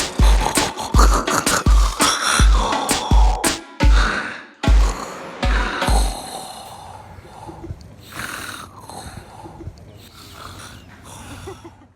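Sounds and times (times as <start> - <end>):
man snoring: 0.0 - 3.4, 4.7 - 9.4, 10.1 - 11.2
deep bass thumps: 0.0 - 4.0, 4.6 - 6.2.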